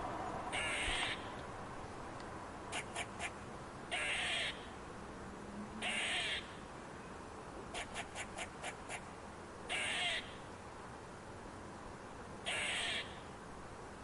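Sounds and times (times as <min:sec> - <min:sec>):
squirrel chucking calls: 0:00.5 - 0:01.3, 0:02.7 - 0:04.7, 0:05.8 - 0:06.6, 0:07.7 - 0:09.1, 0:09.7 - 0:10.4, 0:12.4 - 0:13.2
squirrel raspy calls: 0:00.5 - 0:01.4, 0:02.7 - 0:04.7, 0:05.8 - 0:06.6, 0:07.7 - 0:09.1, 0:09.7 - 0:10.5, 0:12.4 - 0:13.3.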